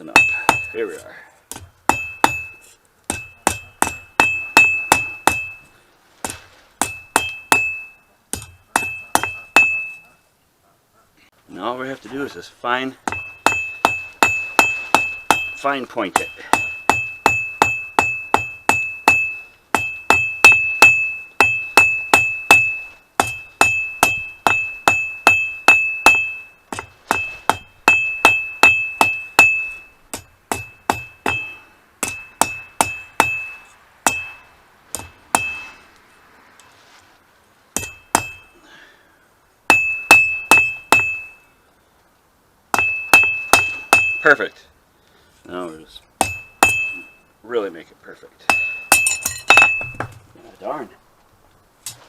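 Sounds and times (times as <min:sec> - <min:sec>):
bright anvil ring: 0:00.0 - 0:01.0, 0:01.9 - 0:05.7, 0:06.8 - 0:10.3, 0:13.1 - 0:35.8, 0:37.8 - 0:38.6, 0:39.7 - 0:41.6, 0:42.8 - 0:44.4, 0:46.2 - 0:47.3, 0:48.5 - 0:50.0
hammer striking steel on anvil: 0:00.0 - 0:10.0, 0:13.0 - 0:35.8, 0:37.8 - 0:38.6, 0:39.7 - 0:41.4, 0:42.7 - 0:44.4, 0:46.2 - 0:47.2, 0:48.5 - 0:50.1.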